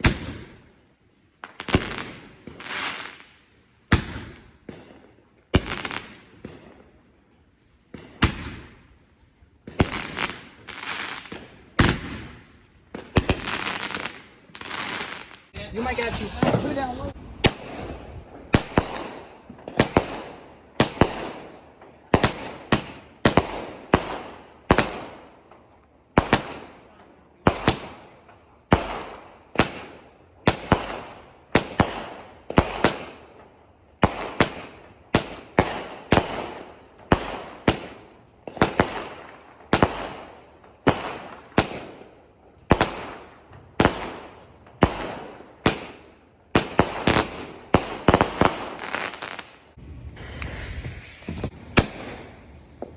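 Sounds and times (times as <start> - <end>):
firework bangs: 3.9 - 5.0, 7.9 - 8.8, 9.6 - 25.3, 34.0 - 42.0, 42.7 - 52.9.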